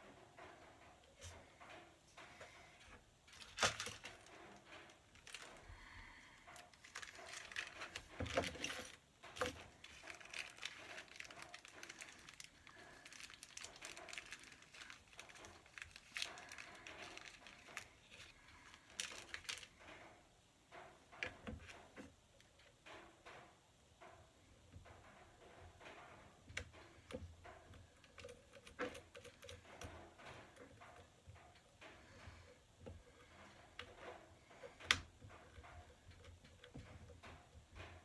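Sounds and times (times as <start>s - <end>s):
small parts clicking and tapping: 0.4s - 38.0s
rustling: 1.1s - 20.2s.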